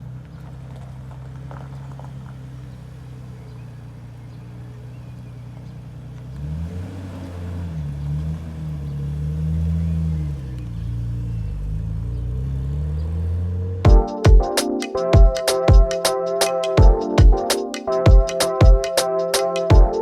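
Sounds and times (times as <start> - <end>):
rising pitched sound: 13.9 - 20.0.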